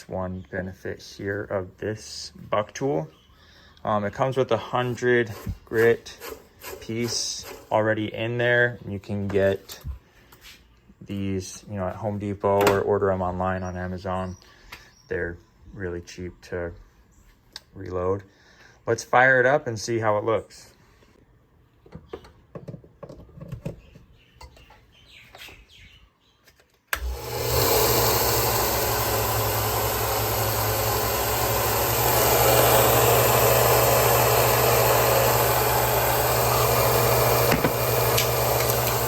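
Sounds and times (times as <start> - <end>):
belt sander whirring: 4.7 - 8.0, 26.9 - 39.0.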